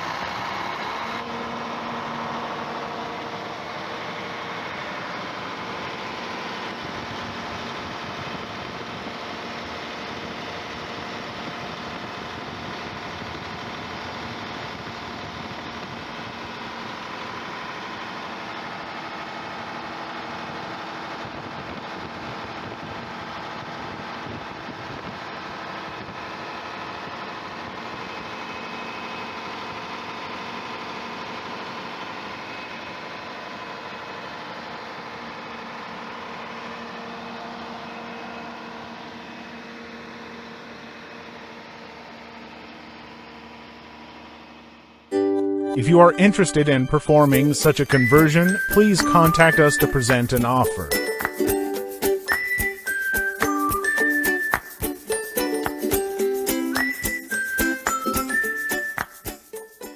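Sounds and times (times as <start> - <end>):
generator engine running: 0.0 - 59.1.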